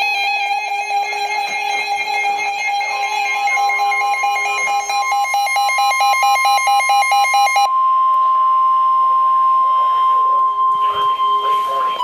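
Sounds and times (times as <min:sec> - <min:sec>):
warbling electronic alert tone: 0:02.9 - 0:07.7.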